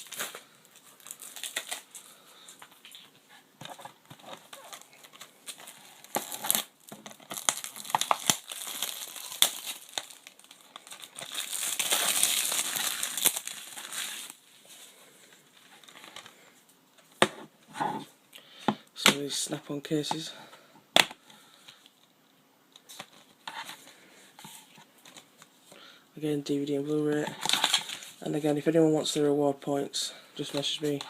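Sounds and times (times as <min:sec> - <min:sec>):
plastic wrap tearing: 0:00.0 - 0:02.1, 0:04.4 - 0:14.4
plastic wrap crinkling: 0:00.0 - 0:03.1, 0:03.8 - 0:16.3.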